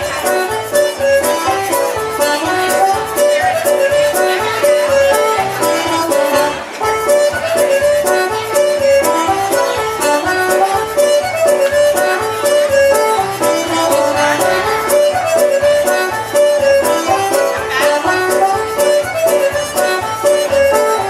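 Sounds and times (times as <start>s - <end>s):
lively melody: 0.0s - 21.0s
bass line: 8.8s - 20.8s.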